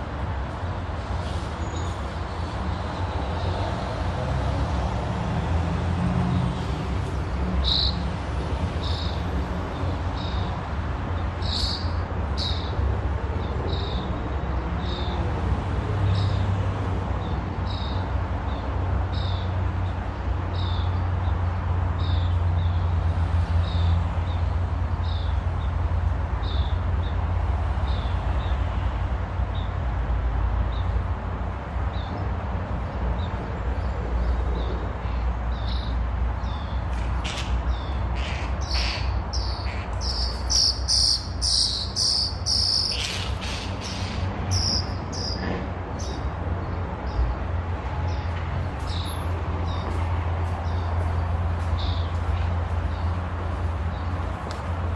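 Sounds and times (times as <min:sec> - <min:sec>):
small bird calling: 0:37.2 - 0:45.4.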